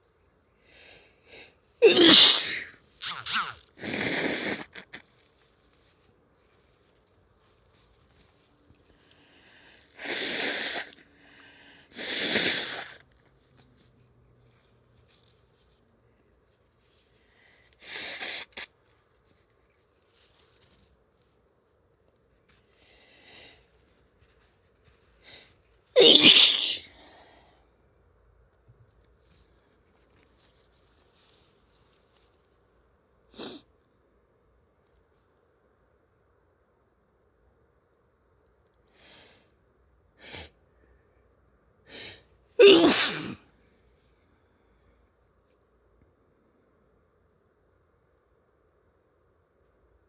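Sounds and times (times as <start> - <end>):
person sneezing: 1.8 - 4.9, 10.0 - 11.0, 12.0 - 13.0, 17.8 - 18.6, 26.0 - 27.0, 33.4 - 33.6, 41.9 - 43.5.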